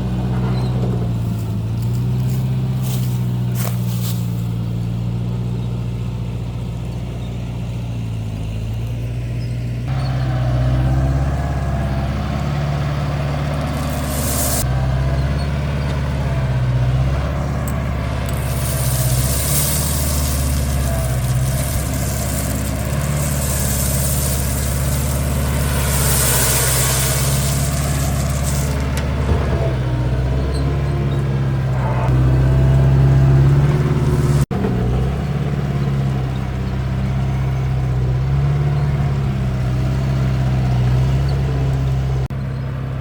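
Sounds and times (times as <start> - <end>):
heavy machinery engine running: 0.0 - 43.0
hissy noise: 13.7 - 14.6, 18.3 - 28.9.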